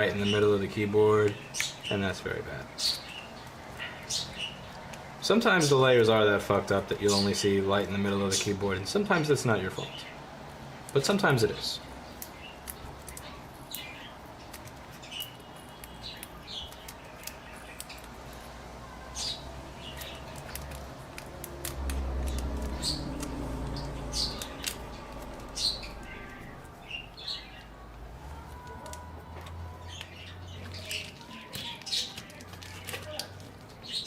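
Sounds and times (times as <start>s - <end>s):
adhesive peeling squeaks: 12.1s - 27.6s
low hum: 19.8s - 27.2s.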